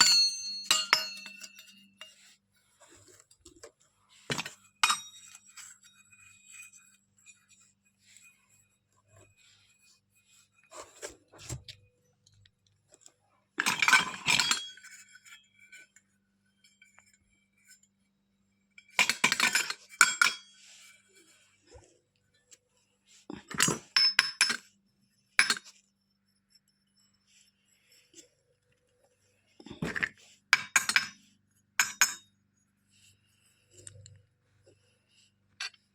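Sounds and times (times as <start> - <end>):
toy kitchen pieces clinking: 13.6 - 15.4, 19.0 - 20.5.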